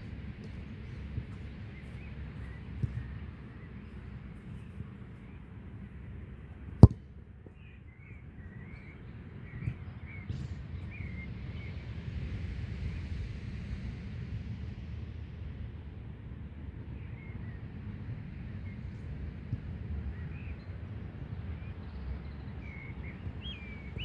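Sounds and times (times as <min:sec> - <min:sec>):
small birds chirping: 0:00.0 - 0:05.4
wind rumble on microphone: 0:08.3 - 0:24.0.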